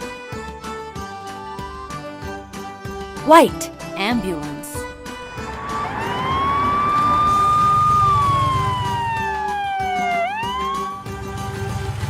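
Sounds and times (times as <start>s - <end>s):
ambulance siren wailing: 5.4s - 11.0s.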